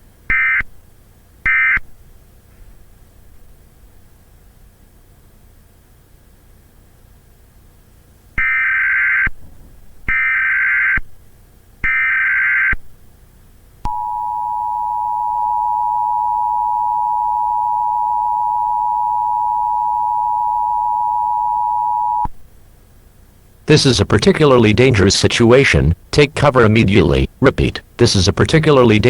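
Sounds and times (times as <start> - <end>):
two-tone attention signal: 13.9 - 22.3.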